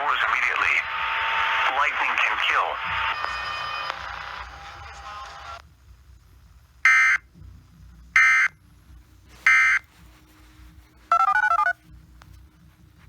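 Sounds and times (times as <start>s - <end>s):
stepping electronic tones: 6.9s - 7.2s, 8.2s - 8.5s, 9.4s - 9.8s, 11.1s - 11.8s.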